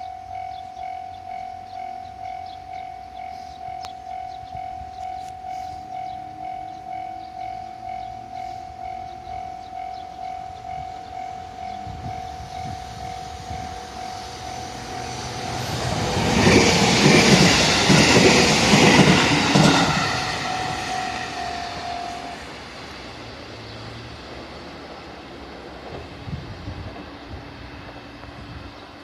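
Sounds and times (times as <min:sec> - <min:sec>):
crossing signal warning tone: 0:00.0 - 0:22.5
electric train passing: 0:00.0 - 0:29.0.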